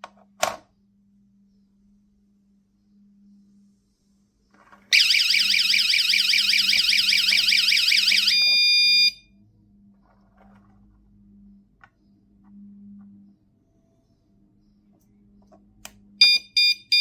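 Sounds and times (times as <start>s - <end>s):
alarm siren warbling: 4.9s - 9.2s.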